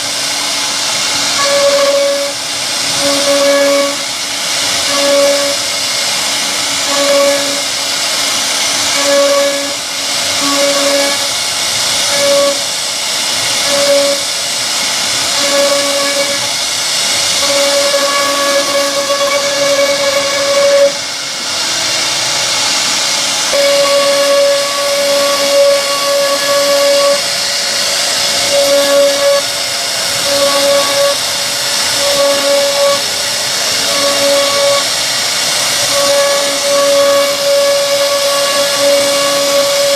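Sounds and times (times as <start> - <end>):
router cutting wood: 0.0 - 39.9
spindle whine: 0.0 - 39.9.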